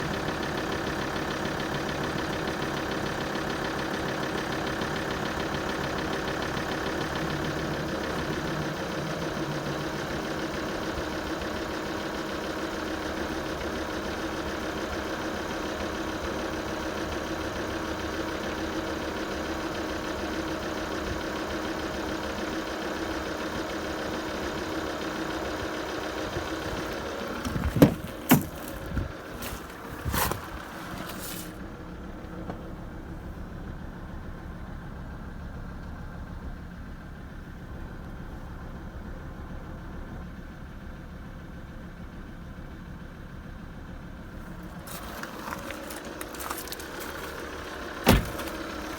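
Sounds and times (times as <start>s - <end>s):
diesel engine idling: 0.0s - 48.9s.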